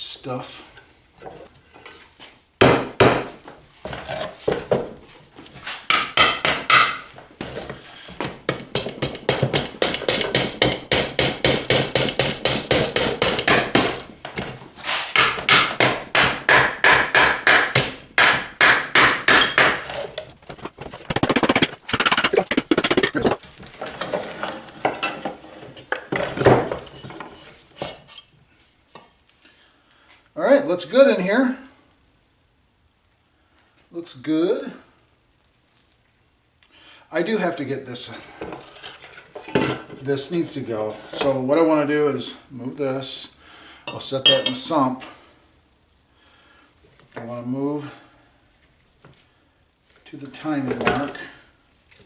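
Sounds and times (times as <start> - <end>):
hammer tapping on metal: 8.5 - 14.1, 15.2 - 19.9.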